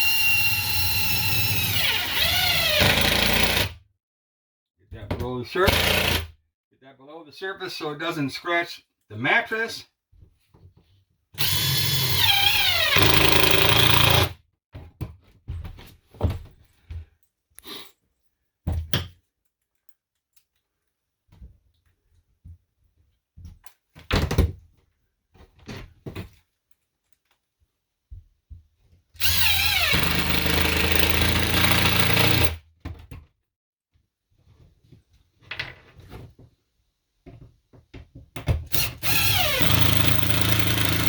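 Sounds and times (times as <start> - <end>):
power drill driving screws into wood: 0.0 - 3.8, 5.6 - 6.3, 11.4 - 14.4, 29.2 - 32.6, 38.7 - 41.0.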